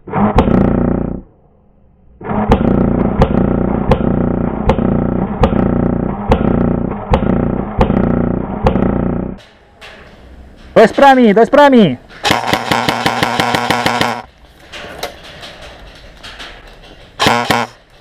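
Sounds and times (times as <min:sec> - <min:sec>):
airsoft rifle full auto firing: 0:12.2 - 0:14.3.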